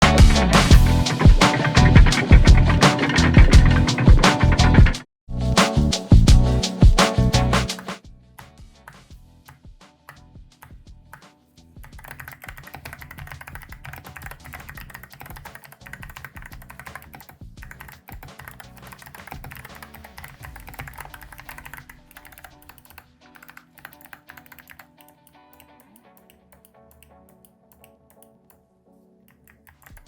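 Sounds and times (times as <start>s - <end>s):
background music: 0.0s - 30.0s
fast typing on mechanical keyboard: 1.2s - 5.0s, 11.9s - 28.3s, 29.3s - 30.0s.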